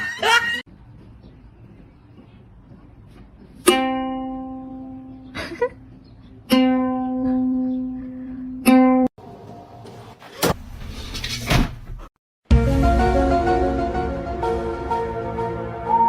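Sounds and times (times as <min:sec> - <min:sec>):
plucked string notes ringing: 0:03.6 - 0:05.3, 0:06.5 - 0:08.0.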